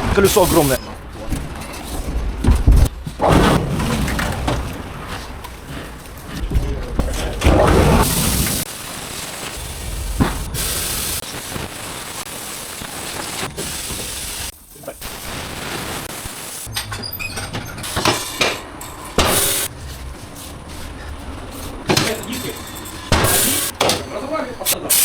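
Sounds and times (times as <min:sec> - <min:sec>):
compressed air hissing: 0:00.0 - 0:00.9, 0:07.5 - 0:16.8, 0:17.8 - 0:21.9, 0:22.8 - 0:23.9, 0:24.6 - 0:25.0.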